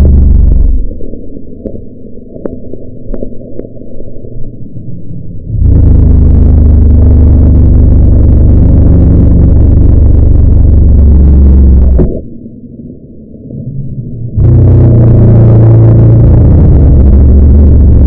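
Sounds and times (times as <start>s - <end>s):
loud distorted low drone: 0.0s - 1.1s, 5.4s - 12.4s, 13.3s - 18.0s
muffled rumble: 0.0s - 18.0s.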